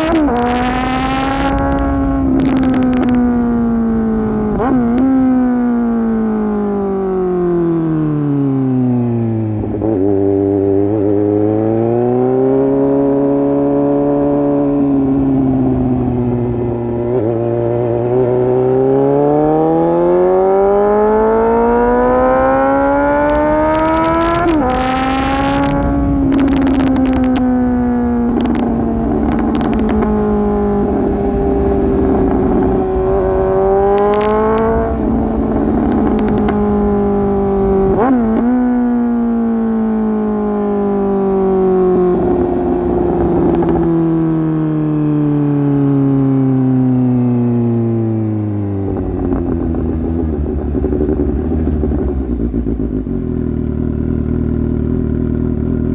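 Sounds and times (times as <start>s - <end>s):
exhaust crackles: 0.0s - 6.4s, 20.2s - 39.0s
motorcycle engine accelerating: 0.0s - 55.9s.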